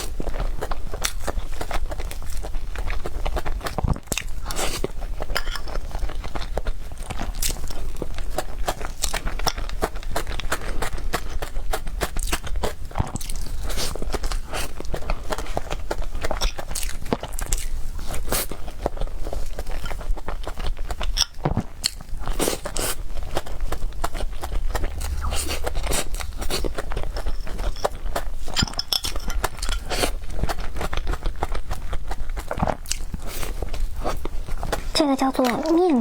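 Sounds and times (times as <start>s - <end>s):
person chewing and crunching food: 0.0s - 36.0s.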